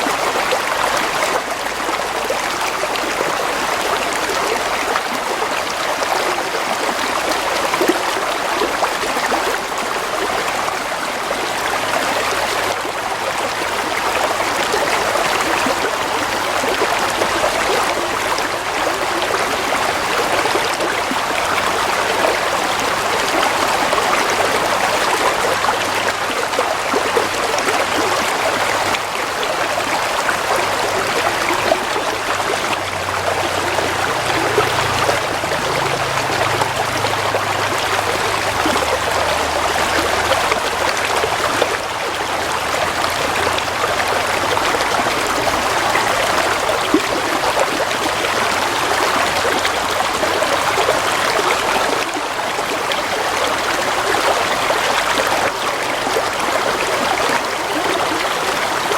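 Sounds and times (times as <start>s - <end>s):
stream babbling: 0.0s - 58.9s.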